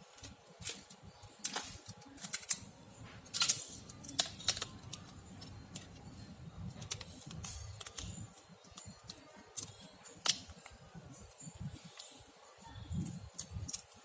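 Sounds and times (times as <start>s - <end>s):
quiet background music: 0.0s - 14.0s.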